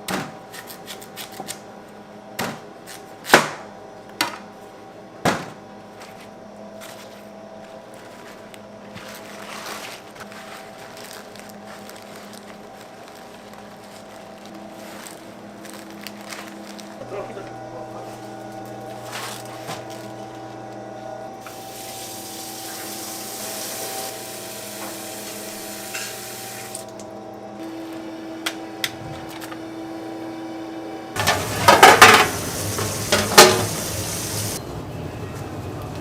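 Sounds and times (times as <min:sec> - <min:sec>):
machine hum: 0:03.8 - 0:36.0
water running: 0:21.4 - 0:27.1, 0:31.2 - 0:34.6
loud clattering: 0:31.2 - 0:33.8.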